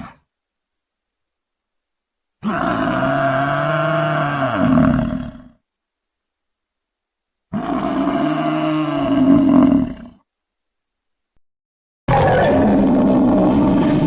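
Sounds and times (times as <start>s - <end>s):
animal-like creature call: 2.4s - 5.6s, 7.5s - 10.2s, 12.1s - 14.0s.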